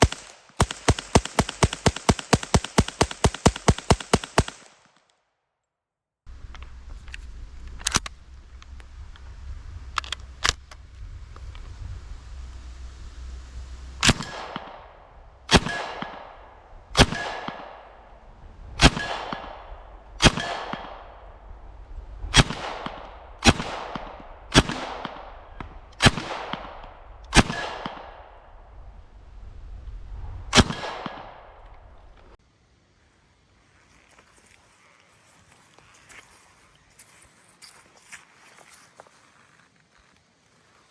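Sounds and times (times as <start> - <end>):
gunshots with long echo: 0.0 - 5.0, 22.4 - 28.7, 30.6 - 31.6.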